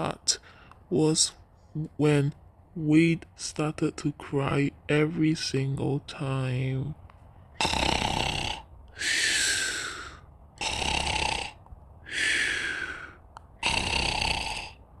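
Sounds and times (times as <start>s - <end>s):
person snoring: 7.6s - 14.8s.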